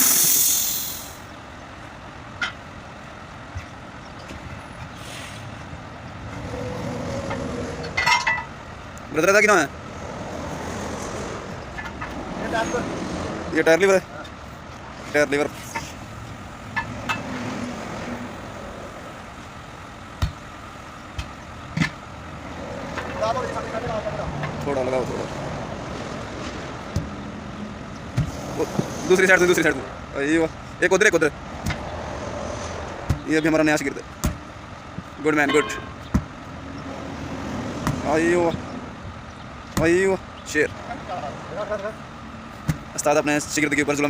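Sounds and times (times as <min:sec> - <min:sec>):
brief hiss: 0:00.0 - 0:01.2
truck engines and traffic rumble: 0:00.0 - 0:44.0.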